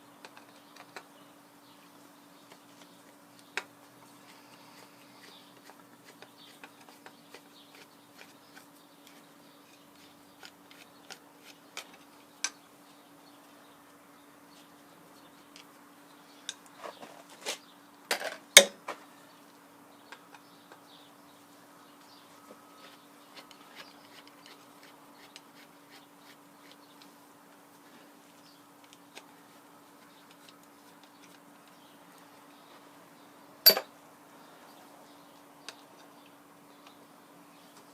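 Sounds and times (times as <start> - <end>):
faint steady hum: 0.0 - 37.9
metal parts clicking and tapping: 33.6 - 33.9.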